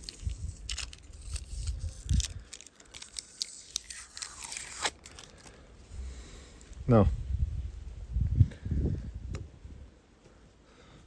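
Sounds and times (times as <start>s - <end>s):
battery crunching and scraping: 0.0s - 5.6s.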